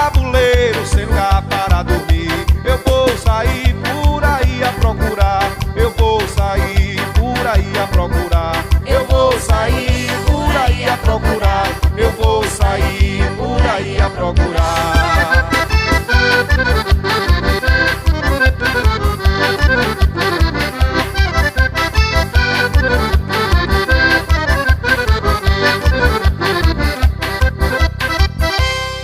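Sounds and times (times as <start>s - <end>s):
accordion melody: 0.0s - 29.0s
drum beat: 2.6s - 3.4s, 8.8s - 13.2s, 14.5s - 21.5s.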